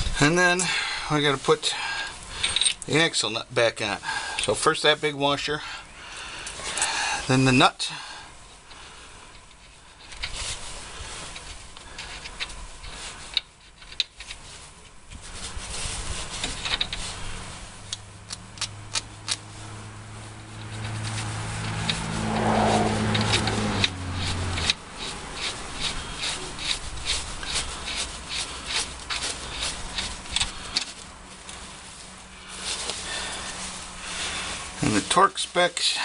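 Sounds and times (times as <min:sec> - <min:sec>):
low steady hum: 0:00.0 - 0:36.0
axle nut clicking: 0:18.3 - 0:19.4.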